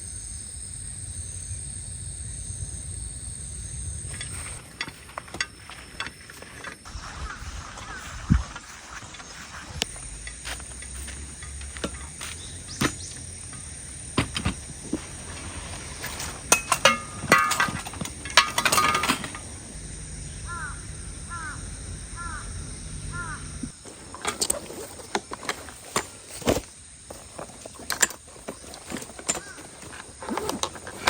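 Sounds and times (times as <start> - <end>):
clattering: 4.1 - 7.9, 8.6 - 19.8, 23.8 - 31.0.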